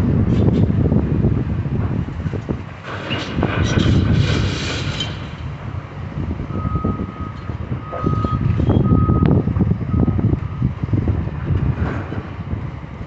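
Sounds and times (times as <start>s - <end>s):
machinery engine rumble: 0.0s - 13.0s
rattling clatter: 2.8s - 5.5s
backup alarm beeping: 6.5s - 9.3s, 9.9s - 10.7s.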